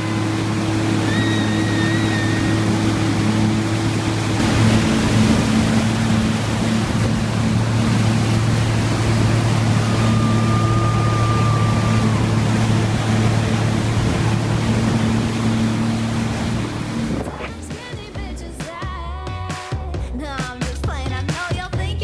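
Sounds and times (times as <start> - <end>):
jet ski engine drone: 0.0 - 18.7
rushing water: 0.0 - 18.8
wind noise: 4.2 - 15.7.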